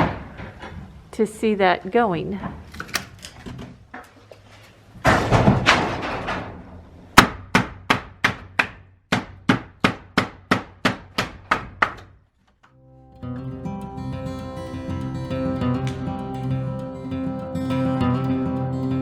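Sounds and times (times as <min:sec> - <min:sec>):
hammer striking wood: 0:07.2 - 0:12.1.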